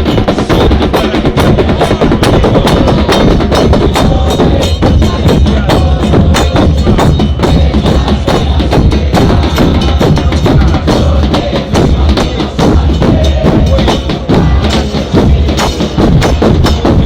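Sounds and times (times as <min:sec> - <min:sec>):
bass drums: 0:00.0 - 0:17.0
cymbals: 0:00.0 - 0:17.0
repique drums: 0:00.0 - 0:17.0.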